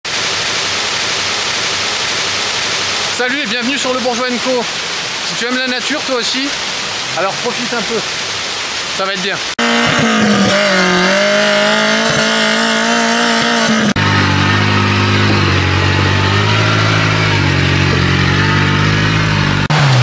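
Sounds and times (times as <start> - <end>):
off-road vehicle engines revving: 9.5 - 20.0.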